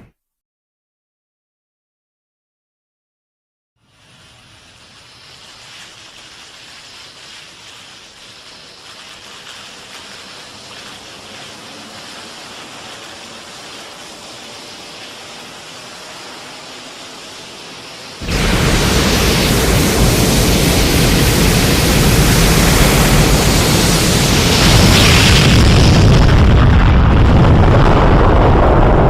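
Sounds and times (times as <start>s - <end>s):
rushing hiss: 3.8s - 26.5s.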